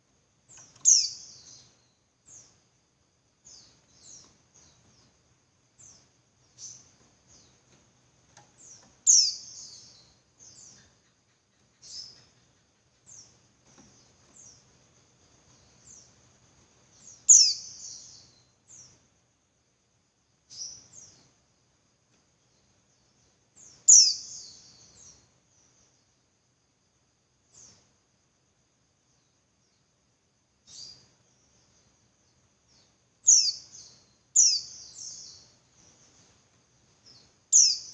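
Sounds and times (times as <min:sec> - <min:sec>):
bird chirping: 0:00.4 - 0:19.2, 0:20.4 - 0:26.2, 0:27.5 - 0:27.9, 0:30.6 - 0:37.9.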